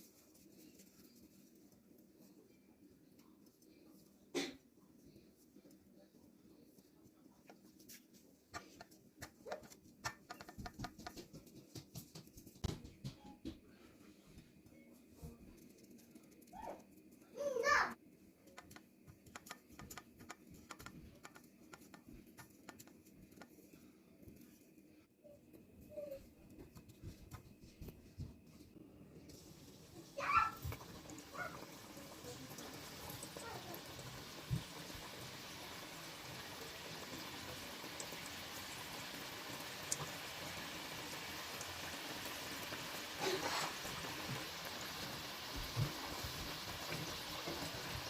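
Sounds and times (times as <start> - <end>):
light clicks and taps: 18.5 - 23.6
food sizzling in pan: 29.3 - 48.0.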